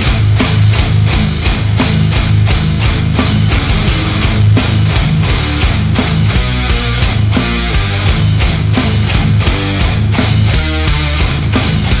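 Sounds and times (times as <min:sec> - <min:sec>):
distorted electric guitar: 0:00.0 - 0:12.0
heavy rock music: 0:00.0 - 0:12.0
steady drum beat: 0:00.0 - 0:12.0.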